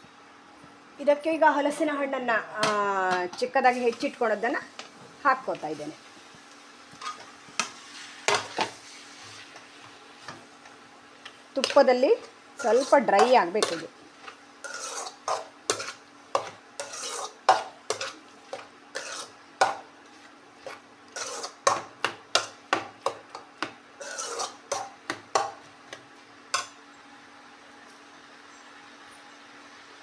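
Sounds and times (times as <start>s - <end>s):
spoon scraping and clinking pan: 12.6s - 13.8s, 14.6s - 19.8s, 21.2s - 21.8s, 24.0s - 24.9s.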